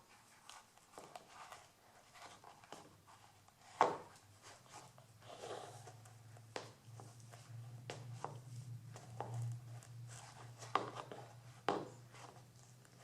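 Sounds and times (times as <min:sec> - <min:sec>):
shoe scuffing: 0:03.6 - 0:06.0, 0:06.6 - 0:12.5
heel clicking on wooden floor: 0:10.6 - 0:12.4.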